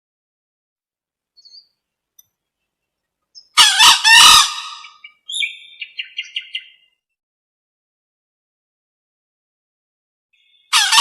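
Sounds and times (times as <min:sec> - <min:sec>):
junglefowl hen calling: 0:03.4 - 0:06.8, 0:10.7 - 0:11.0.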